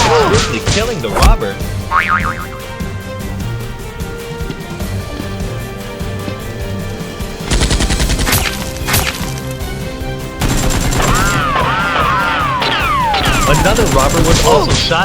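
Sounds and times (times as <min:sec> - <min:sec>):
background music: 0:00.0 - 0:15.0
machine-gun fire sound effects: 0:07.5 - 0:09.2, 0:10.4 - 0:11.6, 0:13.0 - 0:14.8.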